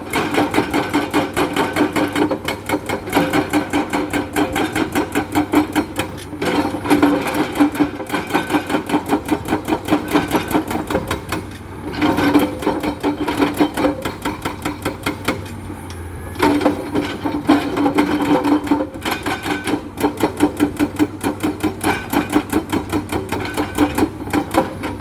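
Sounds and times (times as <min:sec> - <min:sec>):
hydraulic breaker hammering rock: 0:00.0 - 0:15.6, 0:16.4 - 0:25.0
machine engine hum: 0:15.2 - 0:19.0.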